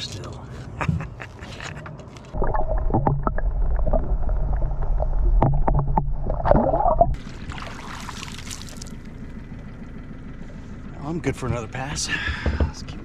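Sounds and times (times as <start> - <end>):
boat motor rumble: 0.0 - 13.0
rough water: 2.3 - 9.6.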